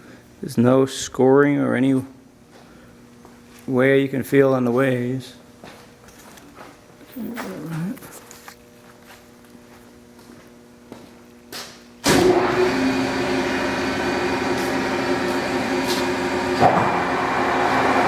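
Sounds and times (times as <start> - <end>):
faint hum: 0.0 - 11.5
lathe running with whine: 12.2 - 18.0.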